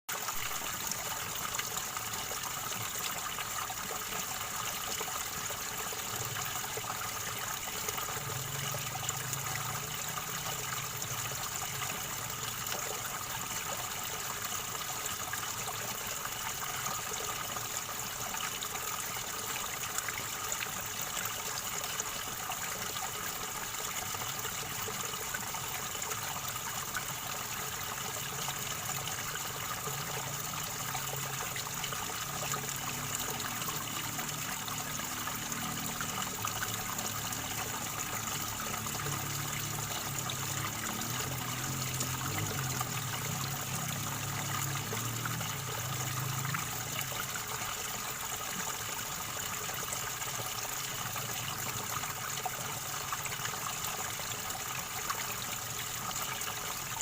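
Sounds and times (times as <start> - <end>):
river water flowing over stones: 0.1 - 57.0.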